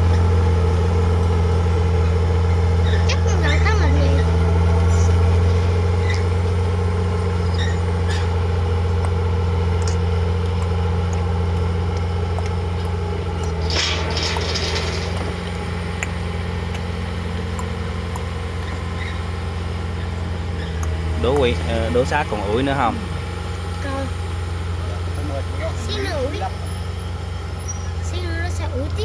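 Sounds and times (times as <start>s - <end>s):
heavy diesel engine running: 0.0s - 29.0s.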